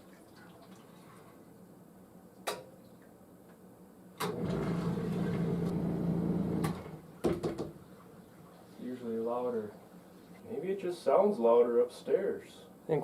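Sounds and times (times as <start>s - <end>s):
pump motor humming: 4.2s - 7.0s.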